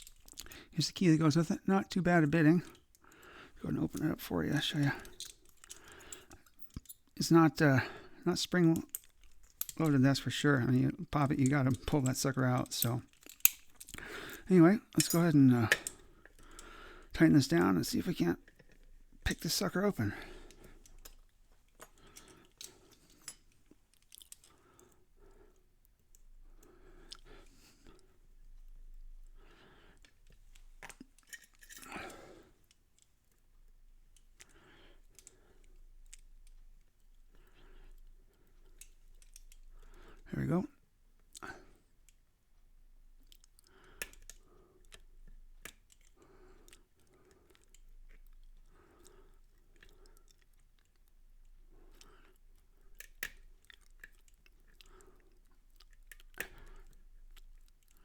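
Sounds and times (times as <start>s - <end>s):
lock pick clicks: 12.7s - 14.0s.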